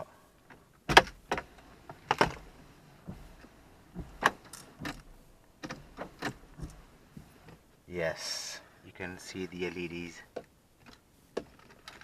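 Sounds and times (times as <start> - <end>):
sharp clicks and light knocks: 0.4 - 7.7, 10.3 - 12.0.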